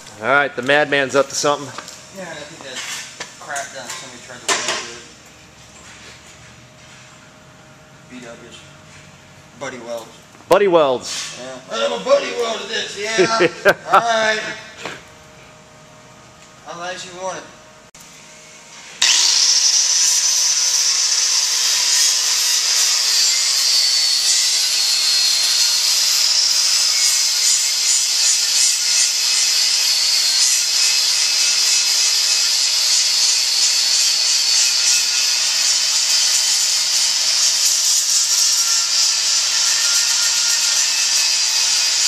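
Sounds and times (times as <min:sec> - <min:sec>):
angle grinder sanding steel: 0:18.9 - 0:42.0.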